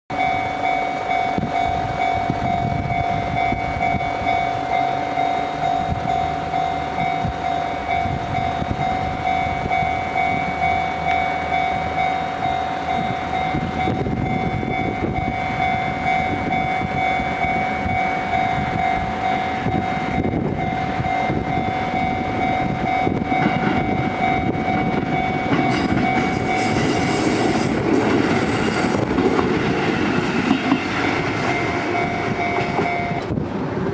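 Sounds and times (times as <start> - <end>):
diesel railcar engine rumble: 0.1 - 33.9
train wheels clattering over rail joints: 23.1 - 33.4.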